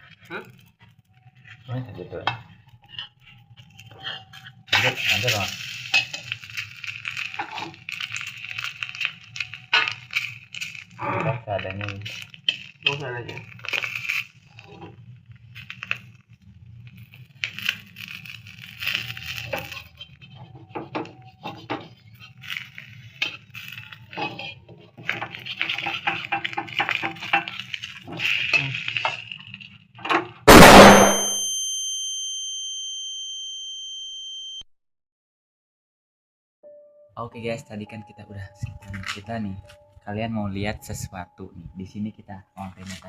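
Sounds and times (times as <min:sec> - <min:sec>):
loud metallic ding: 0:30.5 - 0:31.8.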